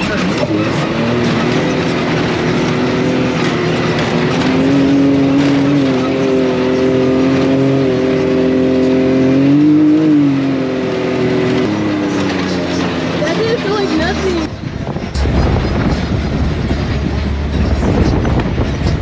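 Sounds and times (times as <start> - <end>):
terrain noise: 0.0 - 9.7, 10.4 - 19.0
off-road vehicle motor running: 0.0 - 19.0
rushing wind: 12.9 - 19.0.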